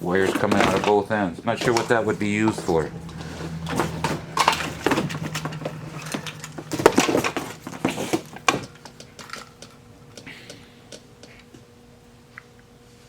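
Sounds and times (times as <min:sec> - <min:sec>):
metal parts clattering in a box: 0:00.0 - 0:09.7.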